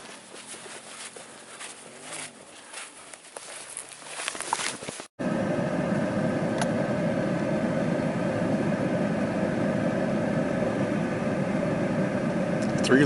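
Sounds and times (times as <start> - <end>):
vehicle engine and road noise: 4.2 - 13.0.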